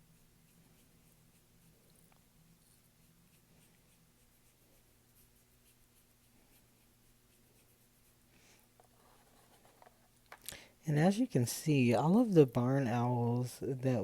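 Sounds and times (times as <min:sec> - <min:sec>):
paintbrush scratching on canvas: 0:00.0 - 0:10.1.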